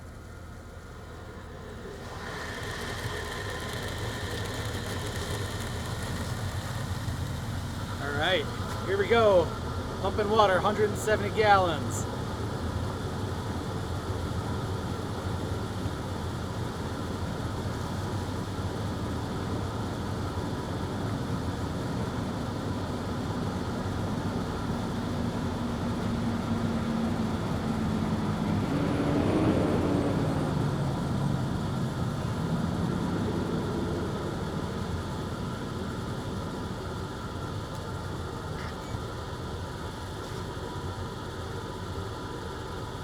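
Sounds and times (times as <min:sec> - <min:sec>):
water rushing through hose: 0:01.9 - 0:08.0.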